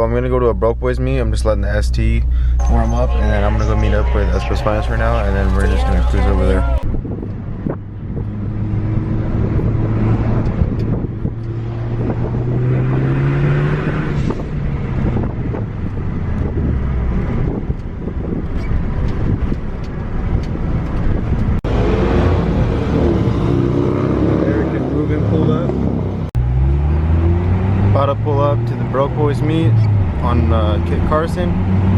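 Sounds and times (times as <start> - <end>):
car engine running: 0.0 - 23.2
road noise: 0.0 - 31.9.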